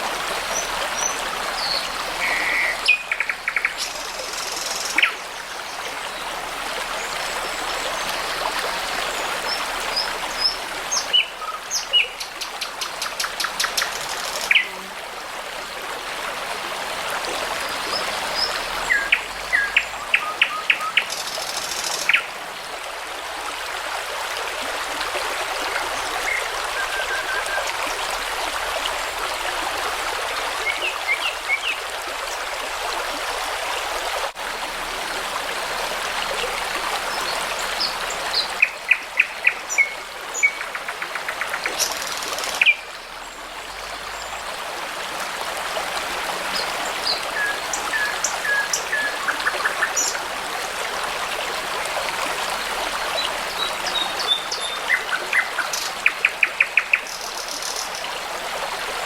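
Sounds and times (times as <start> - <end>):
brook babbling: 0.0 - 59.0
songbirds singing: 53.2 - 58.1.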